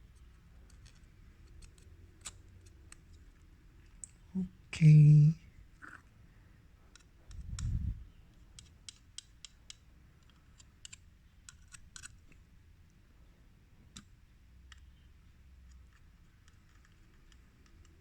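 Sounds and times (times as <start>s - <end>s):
small clicks of handled parts: 0.2s - 4.2s, 6.9s - 12.5s, 13.9s - 15.0s, 15.6s - 18.0s.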